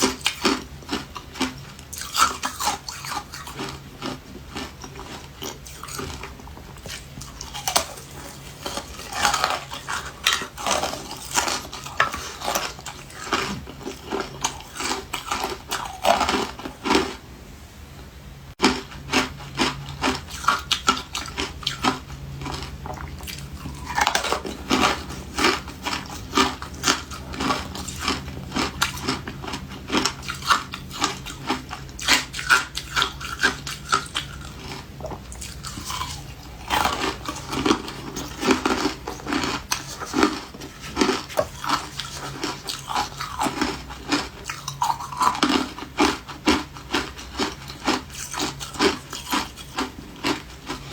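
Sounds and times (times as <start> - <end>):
person chewing ice: 0.0 - 17.2, 18.6 - 50.9.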